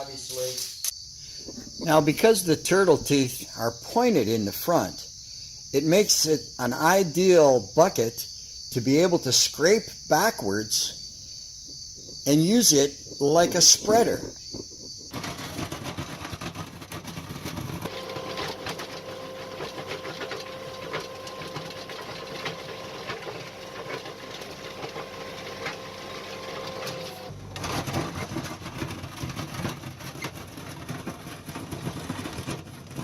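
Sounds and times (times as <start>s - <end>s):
skid steer loader running: 15.1s - 33.0s.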